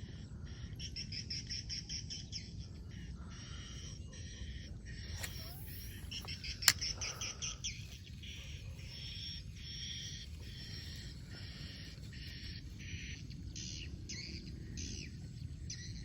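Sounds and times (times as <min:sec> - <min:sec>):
birds chirping: 0:04.5 - 0:16.0
sharp click: 0:05.1 - 0:07.5.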